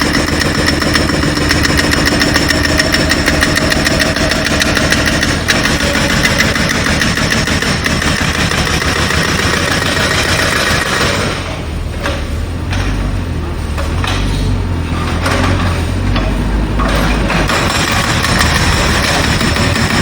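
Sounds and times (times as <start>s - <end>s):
jackhammer hammering: 0.0s - 11.6s, 16.3s - 20.0s
machine engine running: 0.0s - 20.0s.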